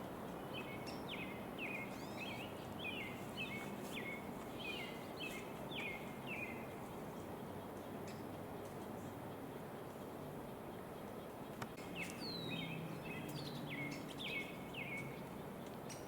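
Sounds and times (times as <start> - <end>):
bird calling: 1.6 - 6.6.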